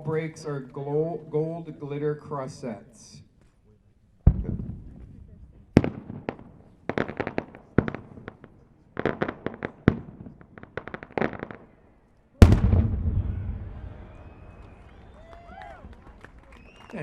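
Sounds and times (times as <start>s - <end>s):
loud firework bang: 12.4s - 15.0s
firework crackling pops: 12.4s - 15.4s.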